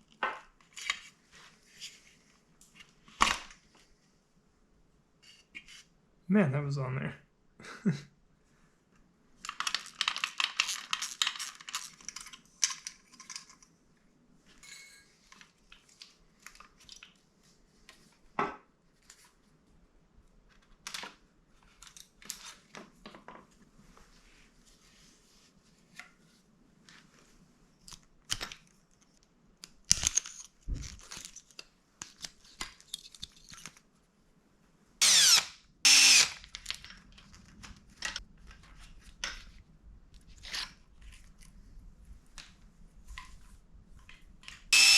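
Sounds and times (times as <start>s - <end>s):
metal parts clicking and knocking: 9.4s - 13.6s.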